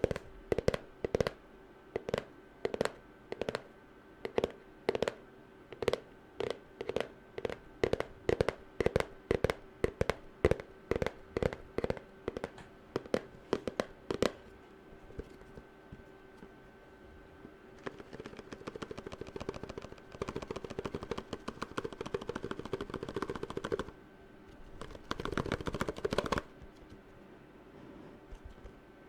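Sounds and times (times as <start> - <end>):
fingernail tapping: 0.0 - 1.4, 2.0 - 14.5, 15.1 - 15.6, 17.8 - 23.9, 24.8 - 26.9.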